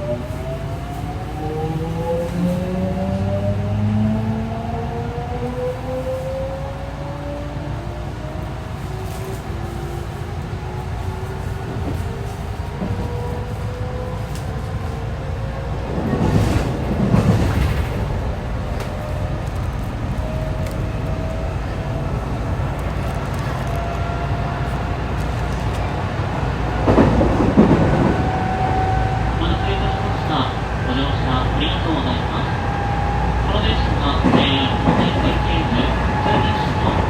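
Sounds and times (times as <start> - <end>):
train rumble: 0.0 - 37.0
rushing noise: 15.8 - 37.0.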